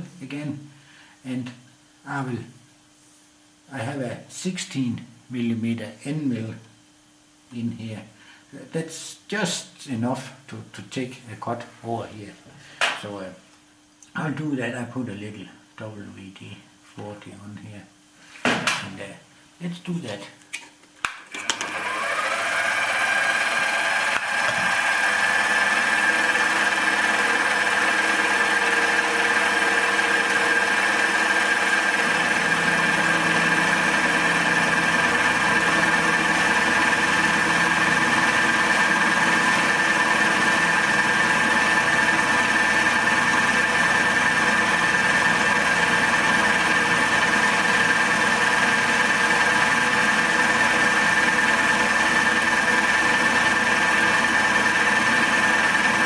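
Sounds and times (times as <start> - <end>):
milling machine spindle whine: 21.4 - 56.0
end mill cutting aluminium: 21.6 - 56.0.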